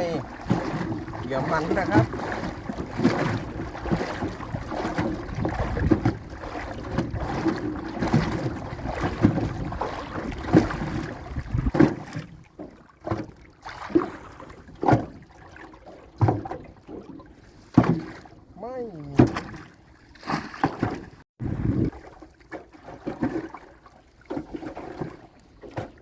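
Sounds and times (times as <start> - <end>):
knocks and clunks on boat: 0.0 - 26.0.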